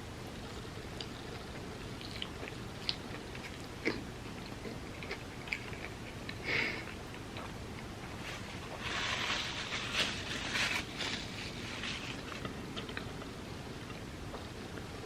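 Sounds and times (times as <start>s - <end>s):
person chewing food: 0.4s - 9.6s.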